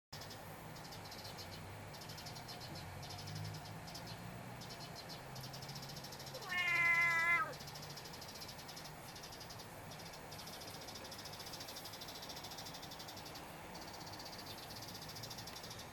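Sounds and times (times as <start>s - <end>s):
kitten meowing: 6.4s - 7.6s.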